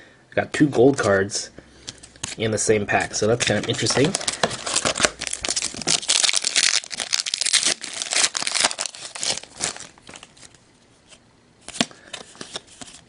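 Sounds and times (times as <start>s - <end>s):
wrapper crinkling and tearing: 3.6s - 10.6s.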